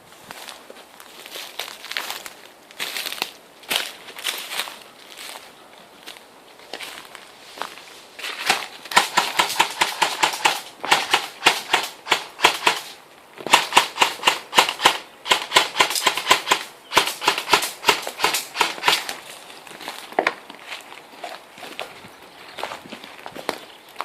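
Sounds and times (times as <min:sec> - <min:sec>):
airsoft guns firing: 0:08.4 - 0:19.2.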